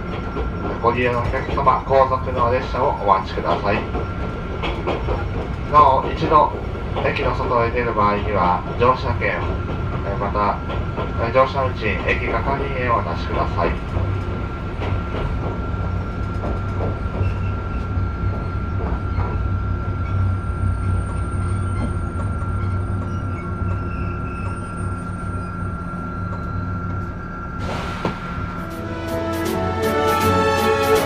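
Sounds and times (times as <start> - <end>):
train rumble: 0.0 - 31.0
train motor whine: 14.0 - 31.0.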